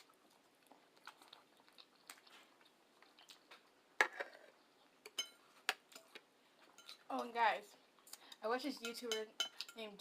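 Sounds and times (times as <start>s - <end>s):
chewing and wet mouth sounds: 0.0s - 9.9s
fork clinking on a plate: 5.1s - 5.4s.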